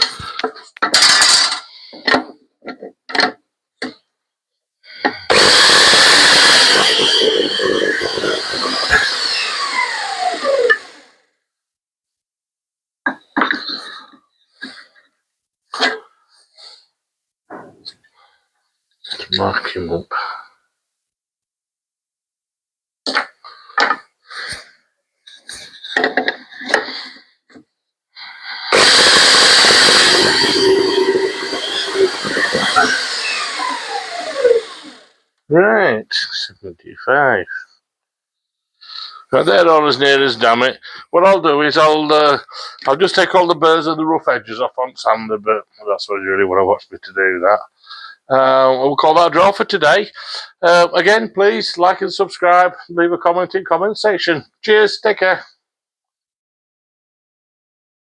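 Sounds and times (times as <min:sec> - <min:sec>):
power tool running: 0:05.3 - 0:11.2, 0:28.7 - 0:35.2.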